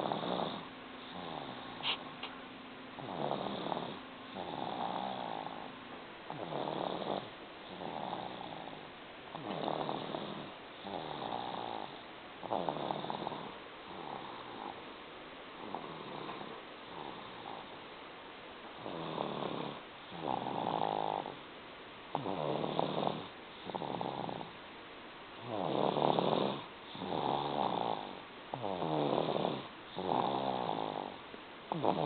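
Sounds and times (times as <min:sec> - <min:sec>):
person snoring: 0:00.0 - 0:02.0, 0:03.0 - 0:05.7, 0:06.3 - 0:14.8, 0:18.8 - 0:21.4, 0:22.1 - 0:24.5, 0:25.4 - 0:32.0.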